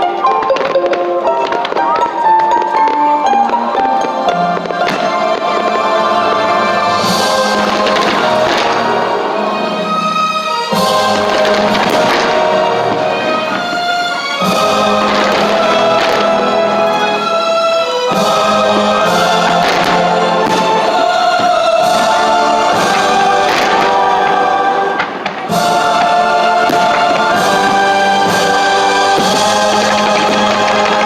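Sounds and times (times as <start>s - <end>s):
choir singing held chords: 0.0s - 31.0s.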